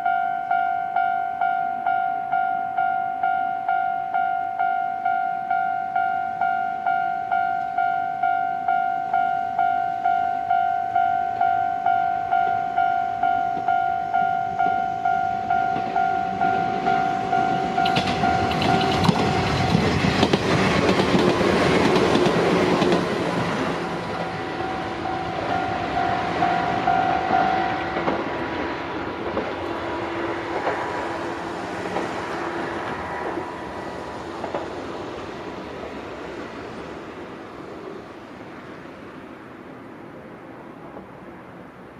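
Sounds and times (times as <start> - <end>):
level crossing bell dinging: 0.0 - 19.4
train wheel and rail noise: 0.0 - 41.9.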